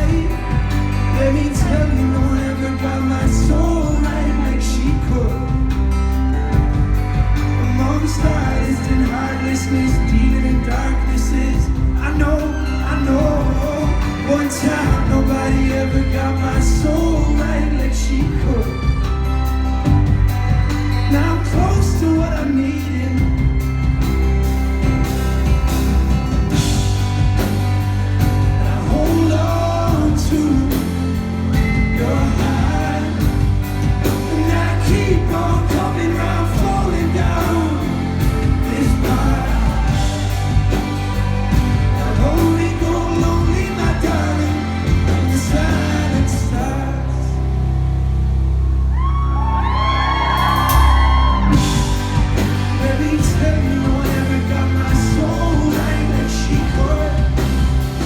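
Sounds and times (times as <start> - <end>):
crowd whooping and yelling: 0.0 - 47.2, 48.6 - 58.0
wordless gliding vocals: 0.0 - 48.9, 50.5 - 58.0
live rock band: 0.0 - 58.0
crowd member screaming: 48.9 - 52.5.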